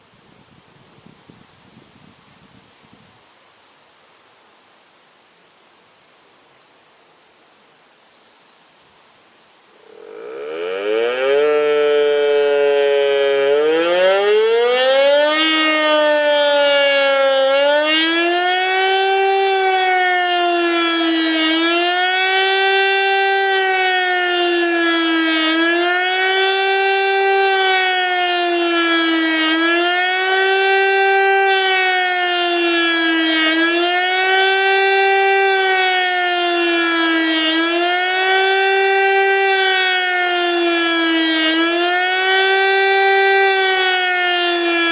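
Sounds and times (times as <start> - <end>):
civil defence siren rising and falling: 9.8 - 44.9.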